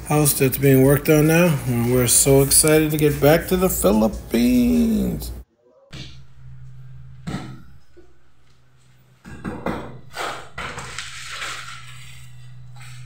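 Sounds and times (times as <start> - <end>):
steady low hum: 0.0 - 13.0
knocks and clatters: 7.2 - 12.6.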